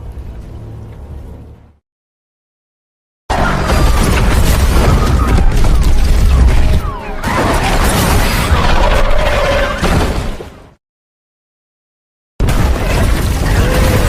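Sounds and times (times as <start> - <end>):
debris crashing and cracking: 3.3 - 10.6, 12.4 - 14.0
heavy destruction rumble: 3.3 - 10.6, 12.4 - 14.0.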